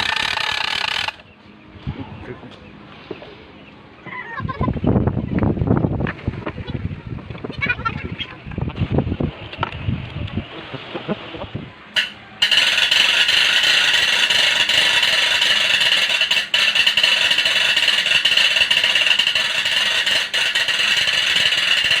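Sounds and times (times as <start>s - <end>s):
toy gun click: 0.0s - 1.2s
toy gun rattling: 0.0s - 1.2s, 12.0s - 22.0s.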